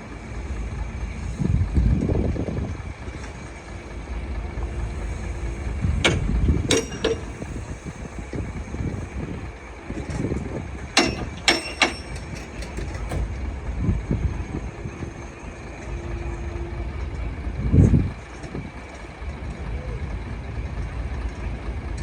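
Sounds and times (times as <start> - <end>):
heavy diesel machinery rumbling: 0.0 - 22.0
sharp metallic clanks: 5.8 - 8.0, 10.9 - 13.3.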